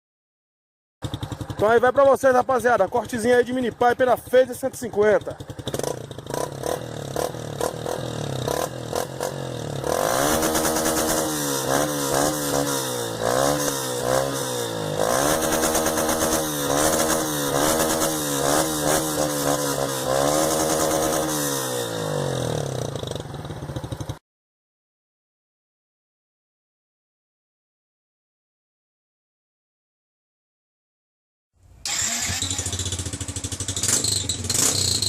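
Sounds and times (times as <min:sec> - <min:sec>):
motorcycle engine revving: 0:01.0 - 0:24.2, 0:31.8 - 0:35.0.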